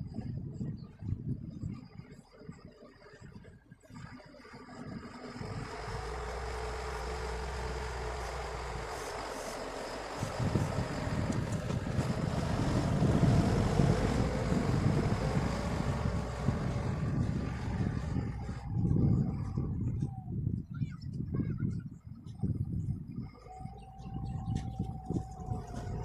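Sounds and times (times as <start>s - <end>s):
wind buffeting microphone: 0.0s - 26.0s
heavy machine engine running: 3.9s - 20.5s, 23.4s - 26.0s.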